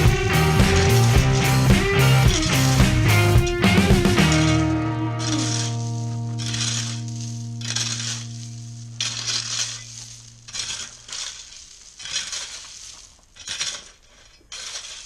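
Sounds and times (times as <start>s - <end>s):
held music note: 0.0s - 10.6s
gritty scraping strokes: 0.0s - 15.0s.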